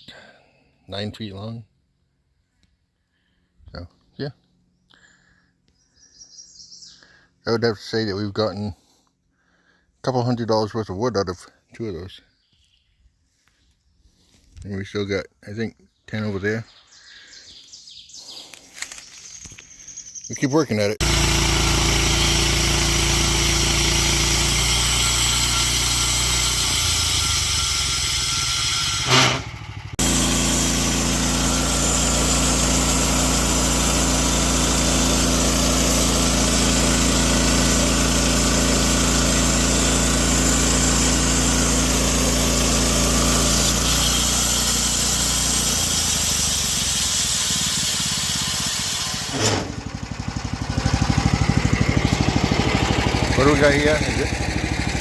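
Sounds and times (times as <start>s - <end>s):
sawmill engine running: 21.0s - 55.0s.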